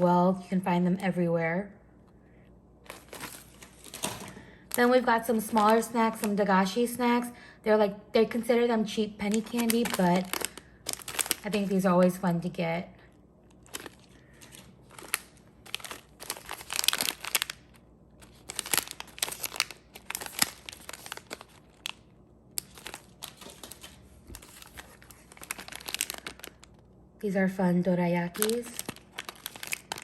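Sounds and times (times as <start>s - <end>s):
snack wrappers crinkling: 2.8s - 6.5s, 8.9s - 12.2s, 13.0s - 26.9s, 28.3s - 30.0s.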